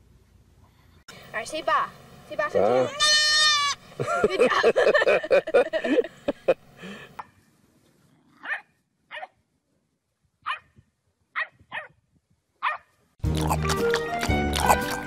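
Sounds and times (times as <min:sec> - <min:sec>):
dog barking: 0:08.4 - 0:09.4, 0:10.4 - 0:10.7, 0:11.4 - 0:12.0, 0:12.6 - 0:12.9.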